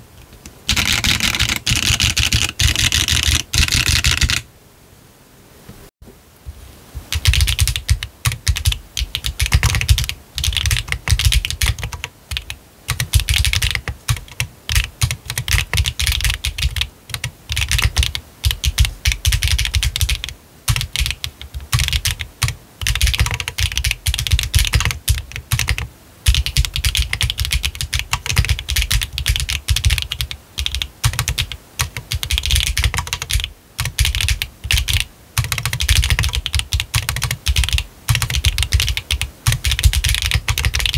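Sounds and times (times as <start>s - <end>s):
mechanical keyboard typing: 0.7s - 4.4s, 7.1s - 40.9s.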